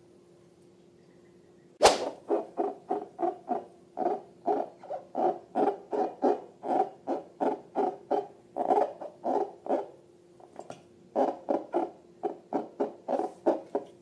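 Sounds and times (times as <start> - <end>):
sharp pop: 1.8 - 2.2.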